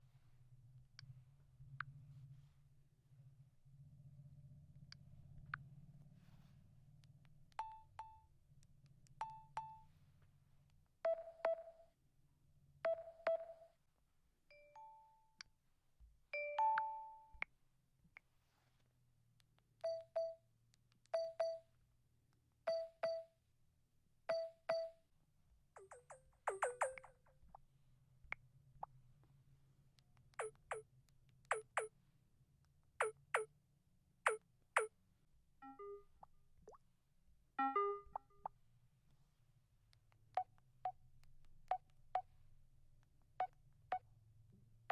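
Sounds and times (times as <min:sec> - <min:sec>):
phone beeps with clicks: 0:11.1 - 0:11.8, 0:12.9 - 0:13.7, 0:19.8 - 0:20.4, 0:21.1 - 0:21.7, 0:22.7 - 0:23.3, 0:24.3 - 0:25.0, 0:37.6 - 0:38.4.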